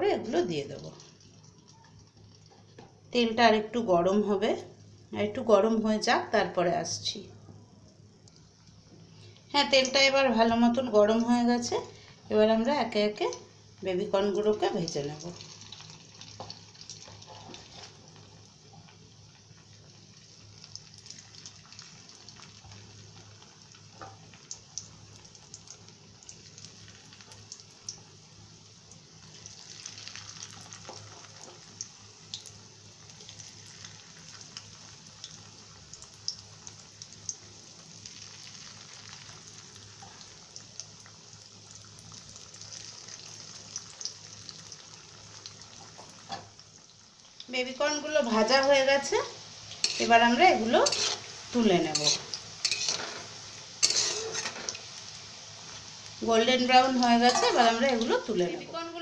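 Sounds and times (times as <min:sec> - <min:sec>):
food sizzling in hot oil: 0:00.0 - 0:07.2, 0:08.4 - 0:59.0
oil popping and crackling: 0:14.6 - 0:58.3.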